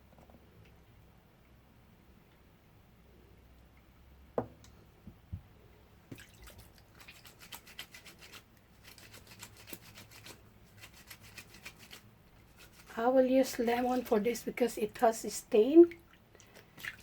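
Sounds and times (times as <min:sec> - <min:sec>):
wet clothes squishing: 0:06.1 - 0:13.0, 0:15.9 - 0:17.0.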